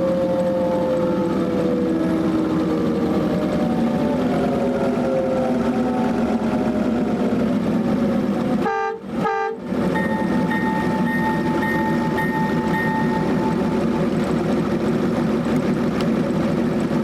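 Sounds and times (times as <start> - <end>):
diesel engine rumble: 0.0 - 17.0
train horn toots: 8.6 - 13.9
locomotive bell ringing: 9.9 - 14.2.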